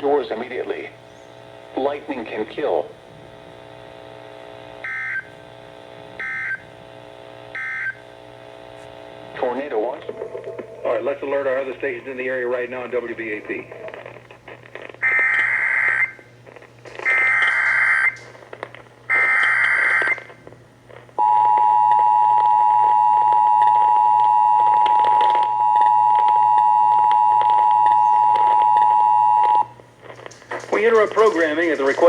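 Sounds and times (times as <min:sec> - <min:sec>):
digital data tone bursts: 0:17.0 - 0:18.2, 0:19.1 - 0:20.3.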